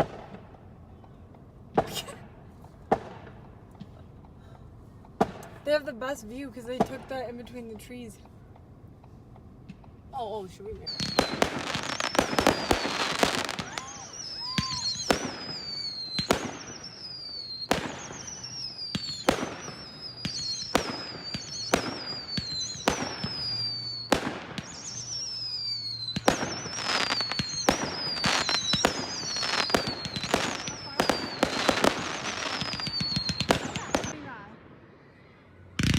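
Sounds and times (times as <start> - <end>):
fireworks banging: 1.7 - 4.2, 5.1 - 8.2, 9.6 - 34.4
high falling firework whistle: 10.9 - 34.3.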